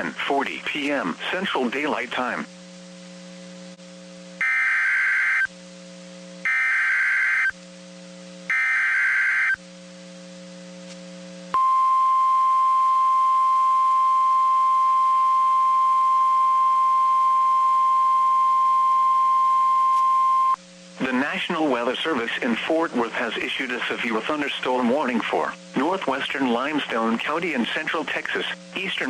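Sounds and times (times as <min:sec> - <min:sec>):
low receiver hum: 0:00.0 - 0:29.0
steady warning alarm tone: 0:04.4 - 0:05.5, 0:06.4 - 0:07.5, 0:08.5 - 0:09.6
digital header tone bursts: 0:08.5 - 0:09.6.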